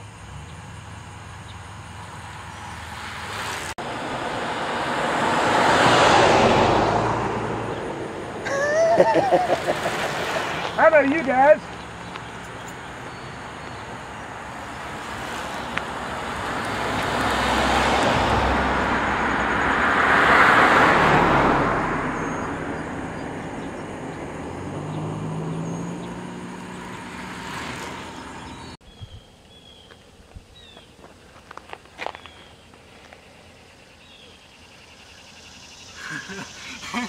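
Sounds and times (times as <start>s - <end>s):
vehicle passing by: 0.0s - 28.8s.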